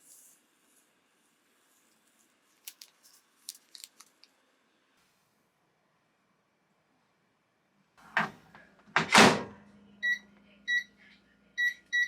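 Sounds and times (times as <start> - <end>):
keypad beeps: 10.0 - 10.9, 11.6 - 12.0.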